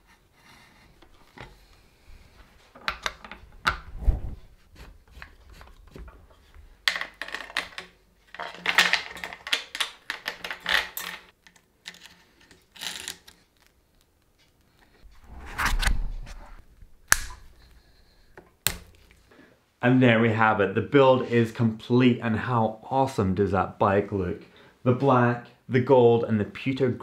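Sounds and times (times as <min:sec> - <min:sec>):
bicycle parts clicking and rattling: 0:06.8 - 0:15.0.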